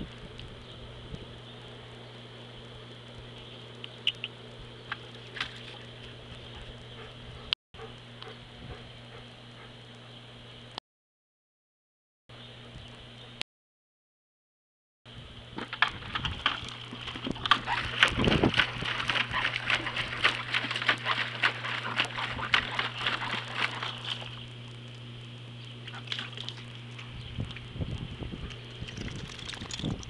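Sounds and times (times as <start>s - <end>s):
steady low hum: 0.0s - 10.8s, 15.1s - 30.0s
puppy splashing in water: 5.0s - 6.7s, 15.8s - 24.9s, 25.8s - 30.0s.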